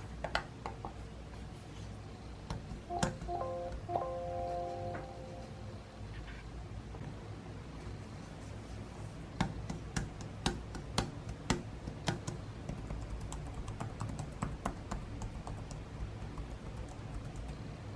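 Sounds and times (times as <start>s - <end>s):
laptop key strokes: 9.4s - 17.6s
light typing: 11.9s - 17.8s.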